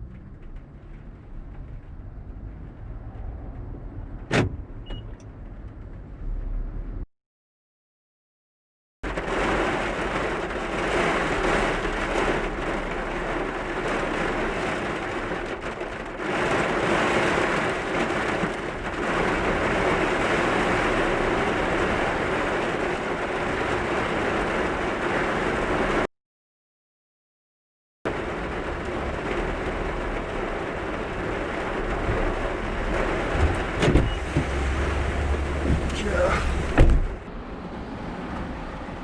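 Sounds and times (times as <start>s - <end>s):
heavy rain: 9.0s - 26.1s, 28.1s - 39.0s.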